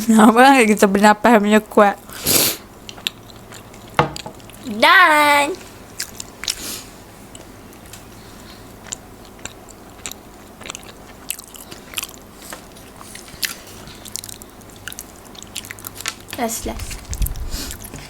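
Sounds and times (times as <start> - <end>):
chewing pastry crunches: 2.8 - 4.6, 7.3 - 16.4.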